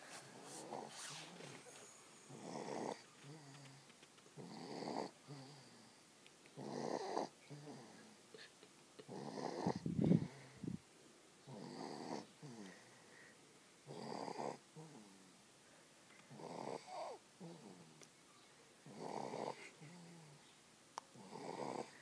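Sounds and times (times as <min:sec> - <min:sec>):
person snoring: 0:02.3 - 0:03.8.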